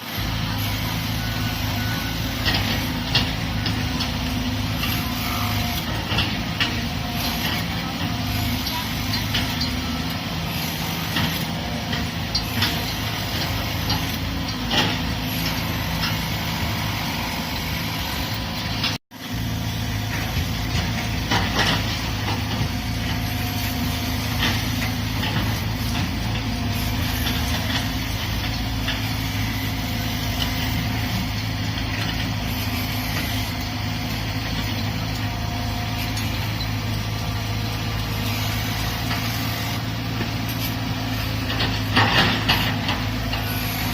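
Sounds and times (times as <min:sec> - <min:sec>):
diesel excavator running: 0:00.0 - 0:43.9
clanks and knocks: 0:41.4 - 0:43.5.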